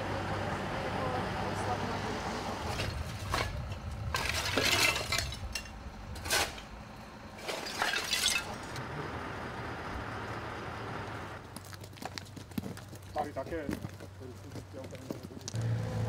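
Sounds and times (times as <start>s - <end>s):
broken glass clinking and scraping: 2.7s - 6.7s, 7.4s - 8.8s.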